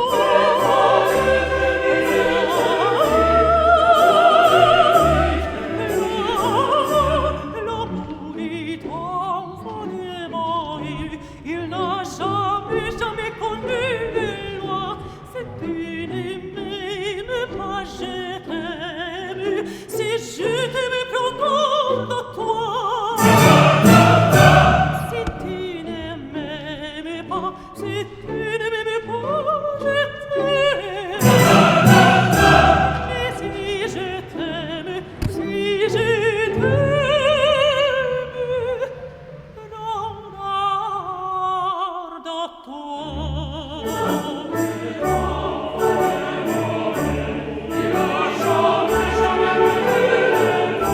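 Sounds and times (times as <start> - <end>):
person singing with vibrato: 0.0 - 10.0, 17.6 - 50.9
orchestral accompaniment: 0.0 - 10.7, 23.2 - 26.5, 30.5 - 38.8, 43.2 - 50.9.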